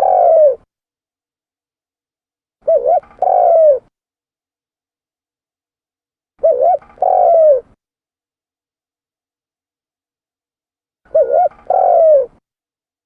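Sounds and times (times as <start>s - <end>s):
dove cooing: 0.0s - 0.7s, 2.6s - 3.9s, 6.4s - 7.8s, 11.1s - 12.4s.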